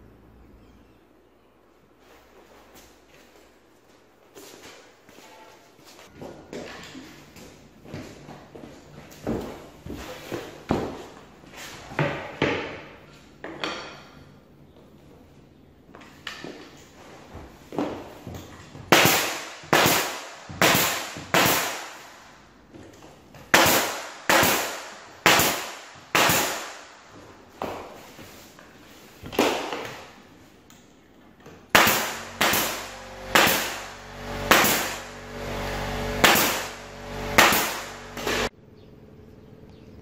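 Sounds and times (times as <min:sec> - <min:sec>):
nail gun shots into wood: 0:18.9 - 0:22.2, 0:23.5 - 0:26.9, 0:31.7 - 0:35.1, 0:36.2 - 0:36.8, 0:37.4 - 0:38.5
steady low hum: 0:31.7 - 0:40.0.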